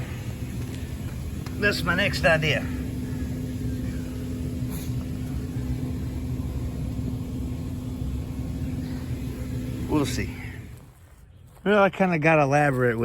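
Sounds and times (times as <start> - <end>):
machine humming: 0.0 - 11.4.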